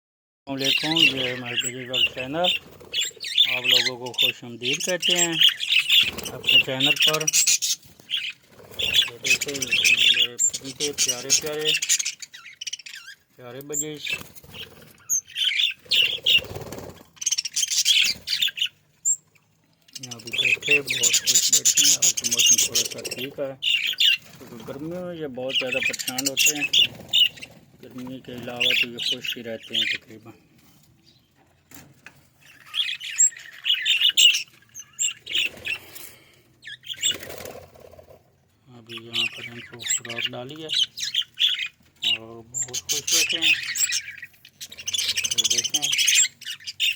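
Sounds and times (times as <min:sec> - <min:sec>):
budgerigars chattering and chirping: 0:00.5 - 0:46.9.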